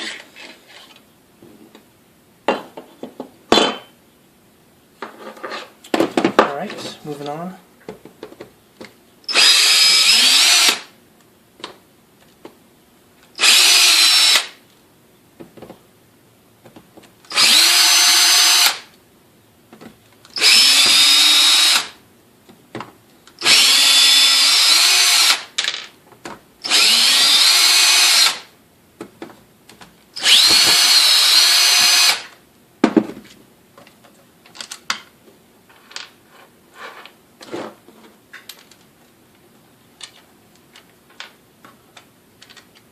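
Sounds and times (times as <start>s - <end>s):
electric drill motor whine: 9.3s - 10.9s, 13.4s - 14.6s, 17.3s - 18.9s, 20.4s - 22.0s, 23.4s - 25.5s, 26.6s - 28.5s, 30.2s - 32.3s.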